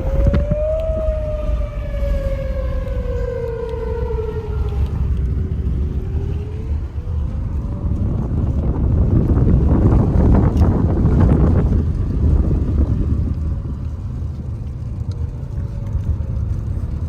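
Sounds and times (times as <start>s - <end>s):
warning siren wailing: 0.0s - 8.9s
wind noise on microphone: 0.0s - 17.0s.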